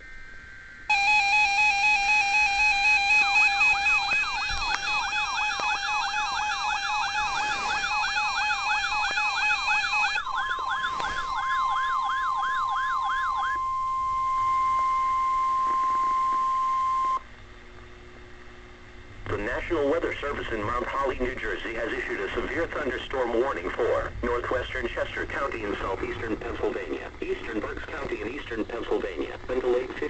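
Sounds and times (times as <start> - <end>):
electronic siren wailing: 0.0 - 17.3
steady alarm tone: 0.0 - 17.3
low radio hiss: 0.0 - 30.0
pulsing two-pitch tone: 0.9 - 17.2.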